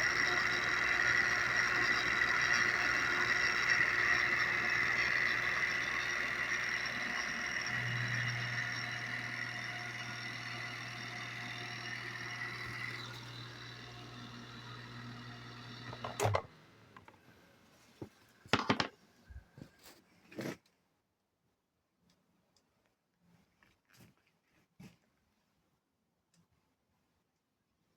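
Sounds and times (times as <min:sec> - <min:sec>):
pump motor whining and humming: 0:00.0 - 0:16.6.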